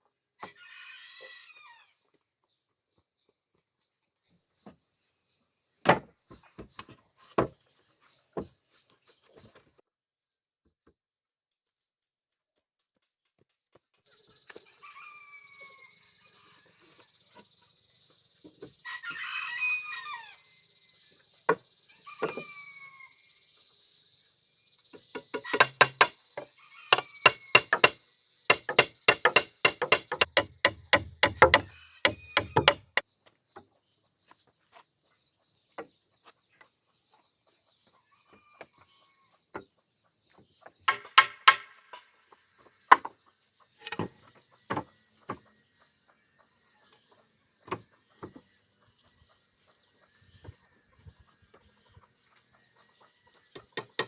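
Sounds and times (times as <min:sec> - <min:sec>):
insect hiss: 0:14.1 - 0:32.7
hammer blows on wooden boards: 0:25.1 - 0:26.2, 0:26.9 - 0:33.0, 0:40.9 - 0:41.8.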